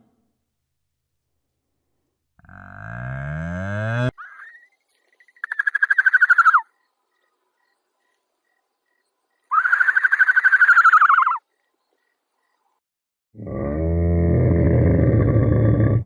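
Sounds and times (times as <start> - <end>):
animal high pulsing call: 5.4 - 6.7, 9.5 - 11.5.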